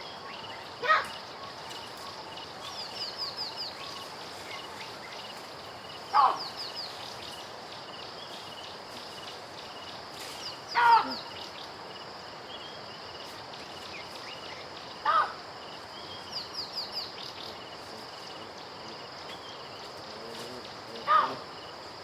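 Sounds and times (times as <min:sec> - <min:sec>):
birds chirping: 0:00.0 - 0:22.0
baboon calling: 0:00.3 - 0:01.5, 0:06.1 - 0:06.6, 0:10.7 - 0:11.3, 0:15.0 - 0:15.4, 0:21.0 - 0:21.5.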